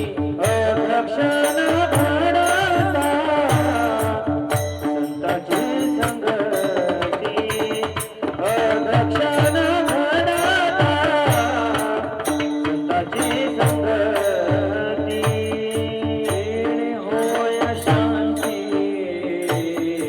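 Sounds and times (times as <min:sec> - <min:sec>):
melismatic singing voice: 0:00.0 - 0:20.0
small cymbals jingling: 0:01.4 - 0:08.3, 0:12.2 - 0:20.0.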